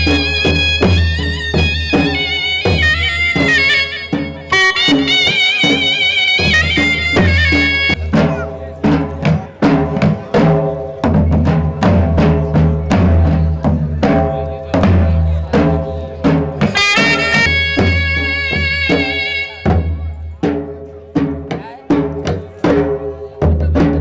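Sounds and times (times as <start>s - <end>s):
folk music drums: 0.0s - 24.0s.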